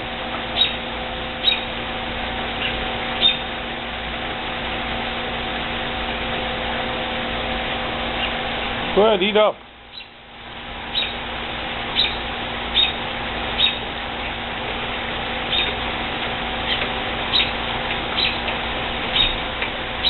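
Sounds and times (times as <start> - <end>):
bird chirping: 0.6 - 0.8, 1.4 - 1.7, 9.9 - 10.2, 10.9 - 11.2, 11.9 - 13.0, 13.6 - 13.8, 15.5 - 15.7, 16.7 - 17.6, 18.2 - 18.4, 19.1 - 19.4.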